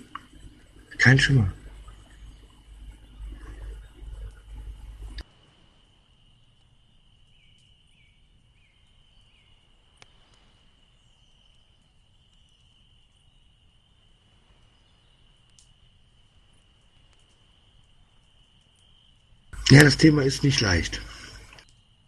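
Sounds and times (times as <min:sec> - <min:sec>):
faint click: 0:10.0 - 0:10.5, 0:15.5 - 0:15.8.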